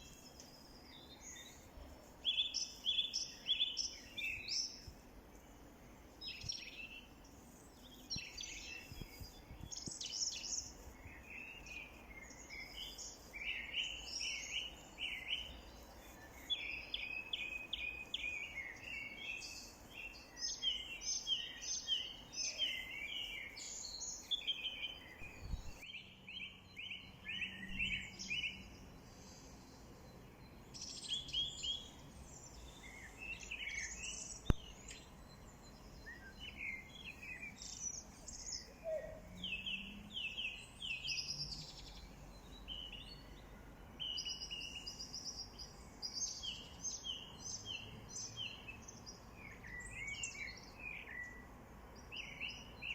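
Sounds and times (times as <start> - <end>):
faint outdoor hiss: 0.0 - 52.9
songbirds chirping and singing: 0.0 - 52.9.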